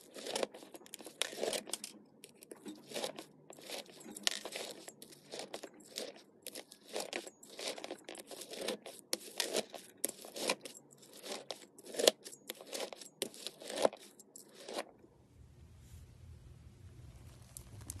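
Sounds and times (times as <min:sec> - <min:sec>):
faint low hum: 0:14.9 - 0:18.0.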